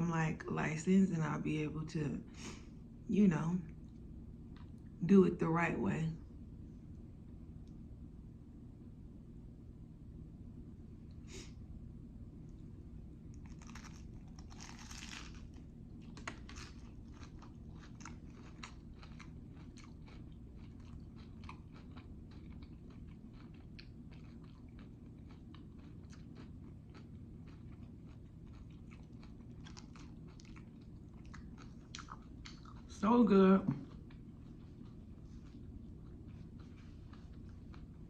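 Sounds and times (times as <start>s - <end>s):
steady low hum: 0.0s - 38.0s
crunchy bite: 13.3s - 32.8s
chewing clicks: 16.0s - 32.9s.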